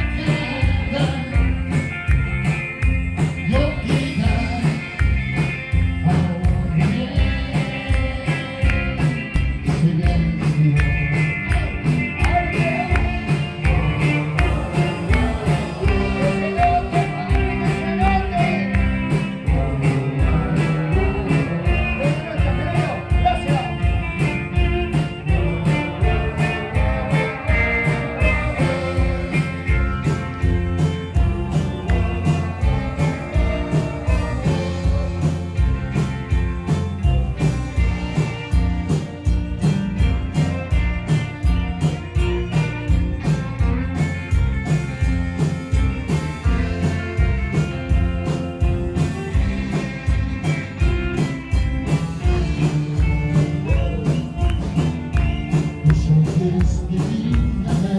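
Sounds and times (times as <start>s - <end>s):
rock band music: 0.0s - 57.9s.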